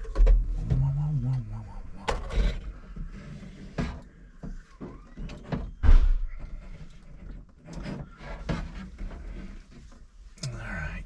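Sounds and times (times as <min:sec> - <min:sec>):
knocks and clunks of car parts: 0:00.0 - 0:01.0.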